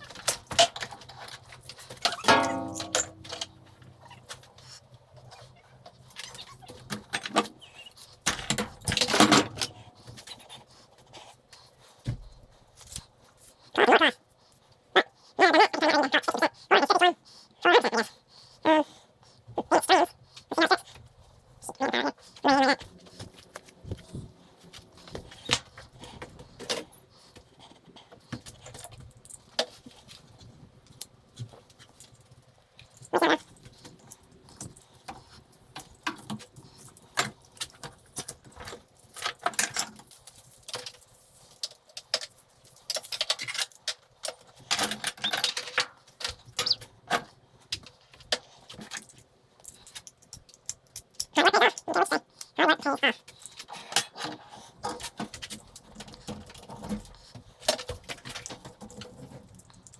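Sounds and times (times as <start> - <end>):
metal scrap clinking and jangling: 0.2 - 4.8, 31.7 - 46.1.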